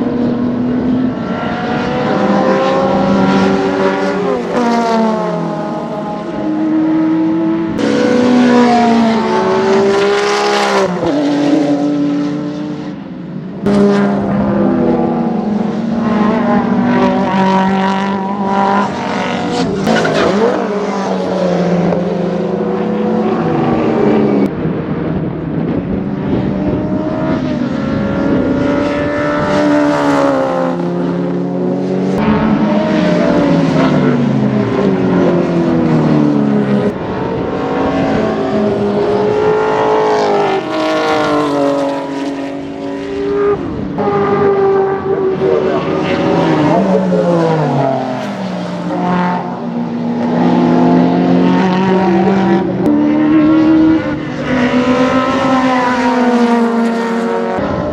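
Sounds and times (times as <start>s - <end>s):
race cars at full throttle: 0.0s - 57.9s.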